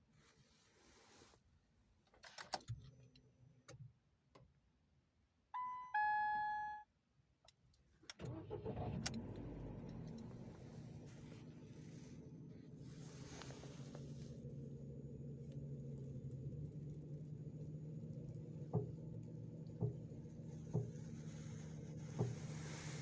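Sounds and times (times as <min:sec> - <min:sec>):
two-note dashboard chime: 0:05.6 - 0:06.8
car engine starting and idling: 0:08.0 - 0:23.0.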